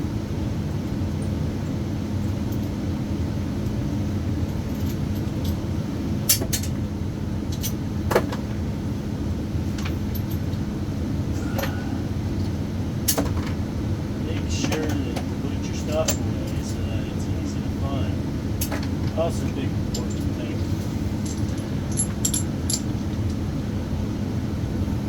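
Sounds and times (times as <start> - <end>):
metallic clicks and clinks: 21.2 - 23.4.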